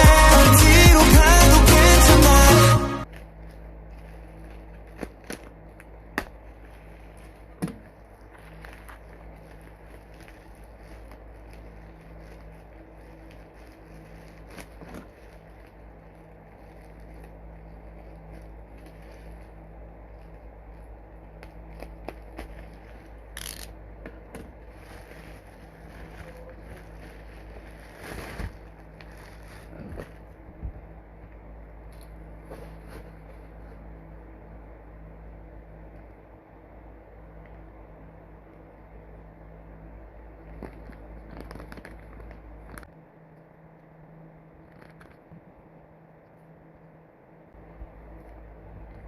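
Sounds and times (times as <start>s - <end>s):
steady low hum: 0.0s - 49.0s
packaging crinkling rustle: 3.0s - 30.7s, 40.4s - 42.9s.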